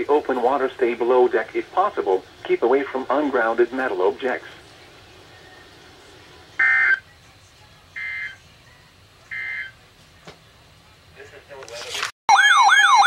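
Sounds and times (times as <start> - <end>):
digital data tone bursts: 6.6 - 7.0.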